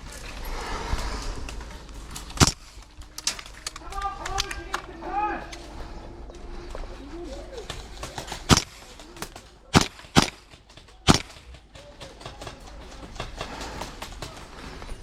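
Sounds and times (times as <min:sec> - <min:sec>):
airsoft rifle shots: 0:02.4 - 0:02.7, 0:08.3 - 0:11.6.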